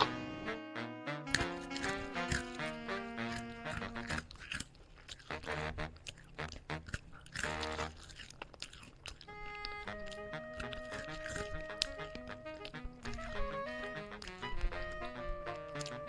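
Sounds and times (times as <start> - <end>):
music playing: 0.0 - 4.2
crunchy chewing: 1.2 - 16.0.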